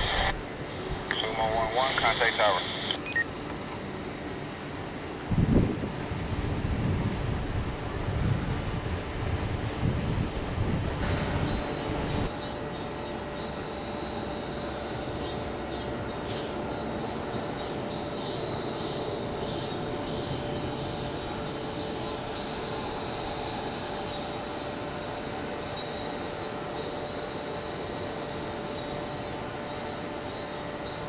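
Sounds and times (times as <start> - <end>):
faint steady tone: 0.0 - 3.3
insects droning: 0.0 - 31.0
wind buffeting microphone: 5.3 - 12.3.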